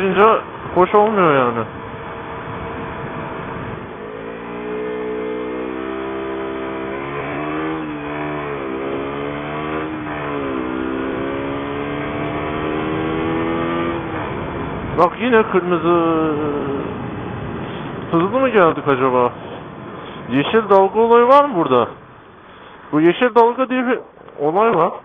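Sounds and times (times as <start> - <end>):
motorcycle engine accelerating: 0.0 - 18.8.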